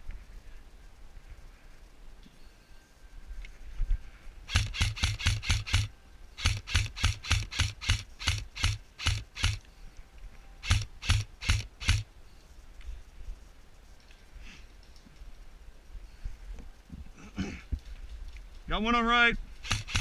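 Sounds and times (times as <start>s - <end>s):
airsoft rifle shots: 4.5s - 9.6s, 10.6s - 12.1s, 19.6s - 20.0s.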